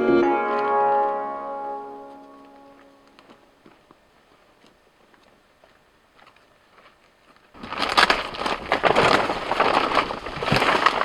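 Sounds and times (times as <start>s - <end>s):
loud close rustling and crackling: 7.6s - 11.0s.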